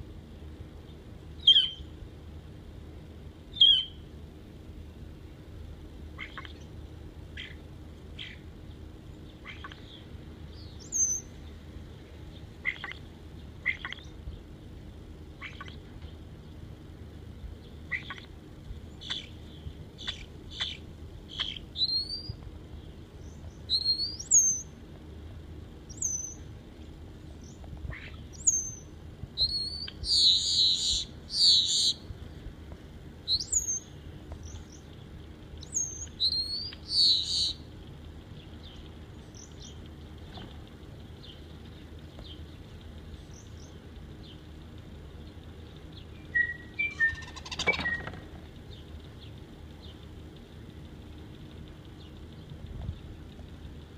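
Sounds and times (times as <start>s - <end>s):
starling whistling: 10.6s - 11.3s, 20.0s - 22.4s, 23.7s - 24.7s, 29.4s - 32.0s, 35.6s - 37.6s, 46.2s - 48.1s
harsh bird bursts: 27.9s - 32.1s, 35.7s - 37.6s.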